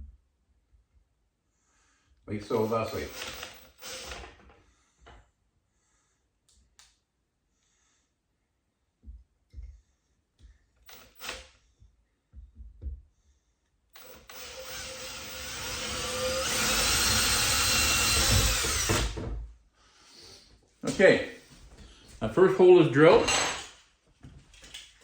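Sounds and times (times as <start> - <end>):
power drill boring through wood: 2.4 - 4.5, 10.9 - 11.6, 14.0 - 19.4.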